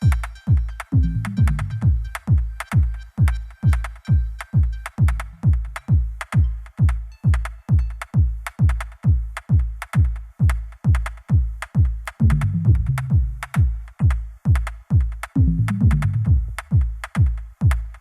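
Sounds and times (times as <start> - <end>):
electronic music: 0.0 - 9.1, 12.2 - 13.6, 15.4 - 16.7.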